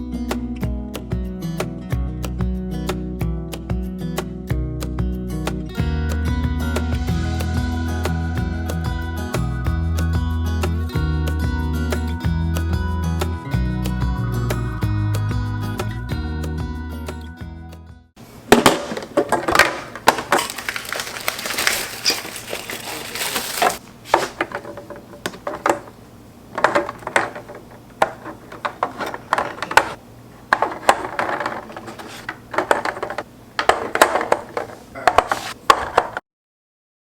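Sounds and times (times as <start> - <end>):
household objects clattering: 18.4 - 36.2.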